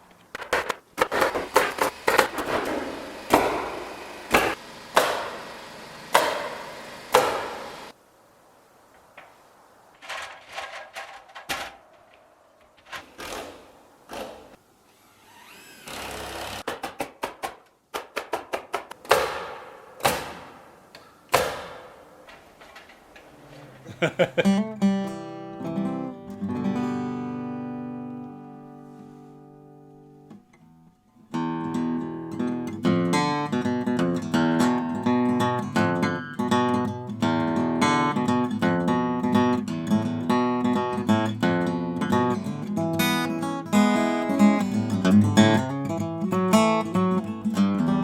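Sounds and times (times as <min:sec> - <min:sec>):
hammer knocks driving nails: 0:00.3 - 0:05.4, 0:06.1 - 0:07.8, 0:16.5 - 0:22.8.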